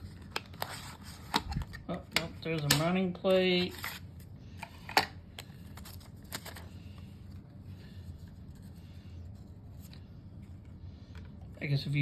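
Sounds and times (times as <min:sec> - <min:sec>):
packaging handled by hand: 0:04.6 - 0:06.8.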